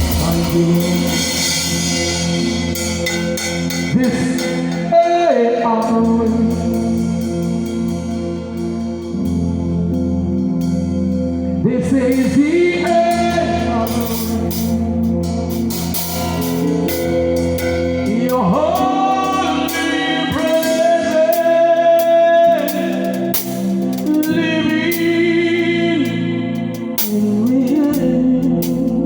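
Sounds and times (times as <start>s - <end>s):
person singing long notes: 0.0s - 2.0s, 11.6s - 14.6s, 18.0s - 23.4s
drum strikes: 0.0s - 3.9s
gospel band playing: 0.0s - 29.0s.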